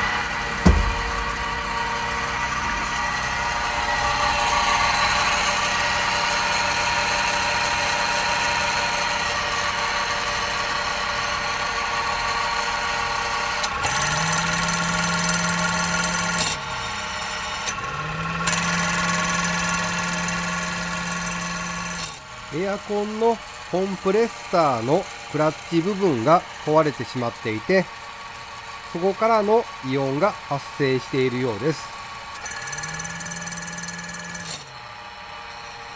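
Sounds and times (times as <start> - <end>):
compressor rattling and droning: 0.4 - 3.7
single knock: 0.6 - 1.7
truck engine running: 0.6 - 2.0.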